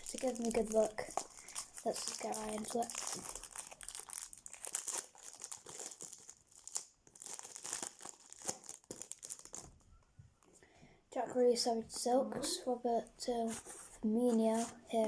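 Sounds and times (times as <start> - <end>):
foil pack crinkling: 0.0 - 9.8.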